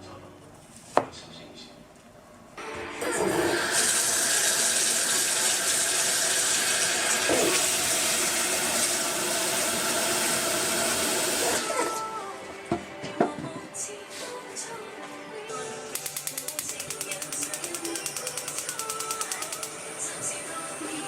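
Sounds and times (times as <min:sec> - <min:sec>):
water running from a tap: 0:03.3 - 0:11.7.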